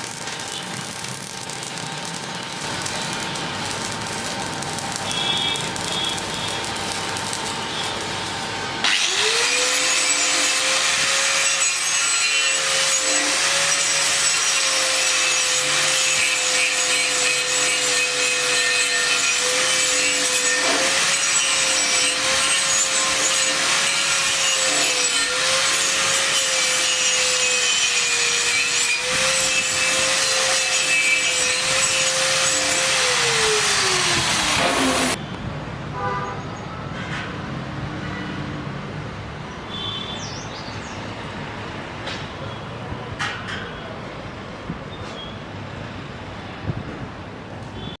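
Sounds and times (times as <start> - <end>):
angle grinder grinding steel: 0.0 - 35.2.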